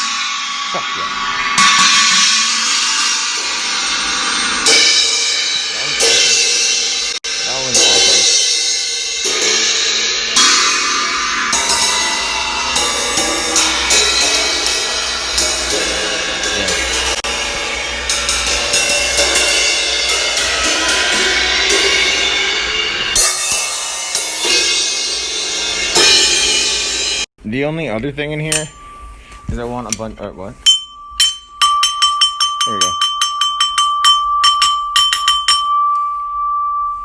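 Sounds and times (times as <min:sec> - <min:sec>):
cymbals struck: 0:00.0 - 0:27.3, 0:28.2 - 0:37.0.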